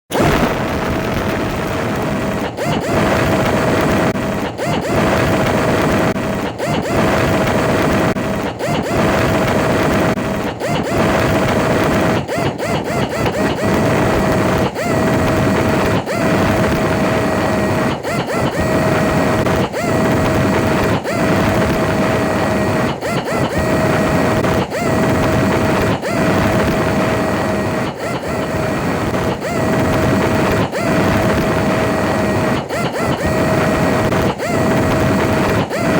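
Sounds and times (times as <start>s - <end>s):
buffing machine whining: 0.1s - 35.9s.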